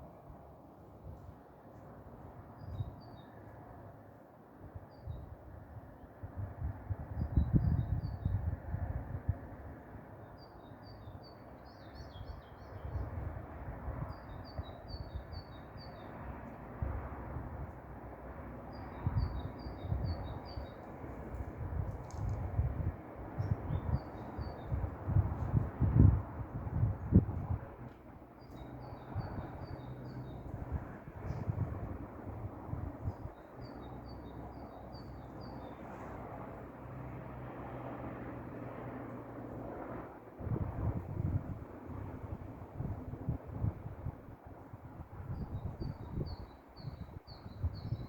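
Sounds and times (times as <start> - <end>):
songbird singing: 2.6 - 3.4, 10.2 - 13.1, 18.7 - 21.0, 23.4 - 24.8, 28.4 - 30.6, 33.0 - 36.2, 45.4 - 48.0.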